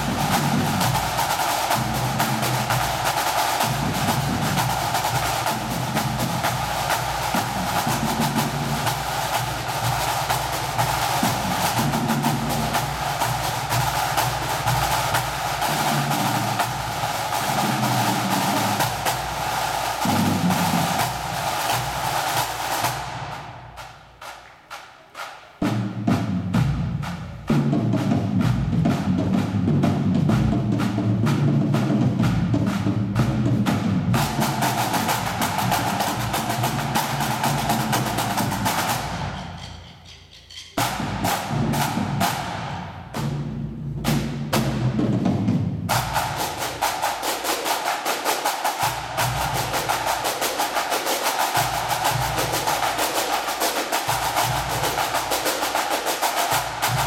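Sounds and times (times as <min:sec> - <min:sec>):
bass and tenor drums: 0:00.0 - 0:24.3, 0:25.6 - 0:47.0
rapid snare drumming: 0:00.0 - 0:57.0.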